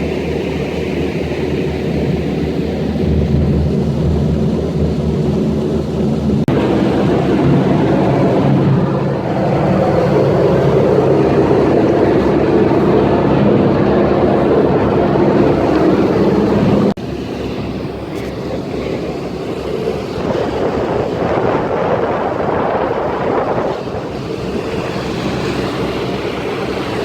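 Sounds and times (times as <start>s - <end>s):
boat engine humming: 0.0s - 27.0s
water and waves: 0.0s - 27.0s
wind on microphone: 0.0s - 27.0s.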